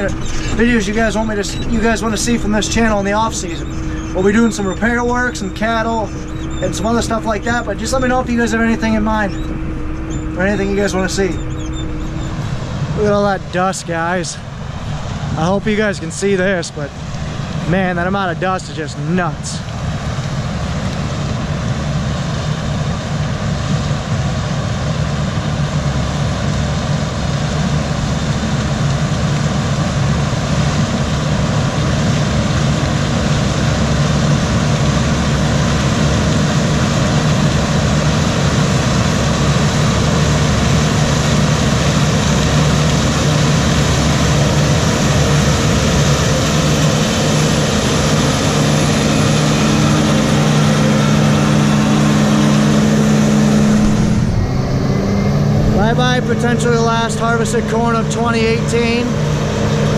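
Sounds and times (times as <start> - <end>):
diesel engine drone: 0.0 - 59.9
steady low hum: 0.0 - 59.9.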